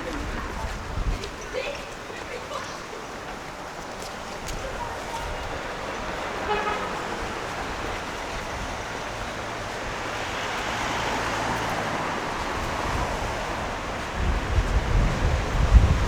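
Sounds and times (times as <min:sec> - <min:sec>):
vehicle passing: 0:06.1 - 0:14.3
car horn toot: 0:06.4 - 0:07.0.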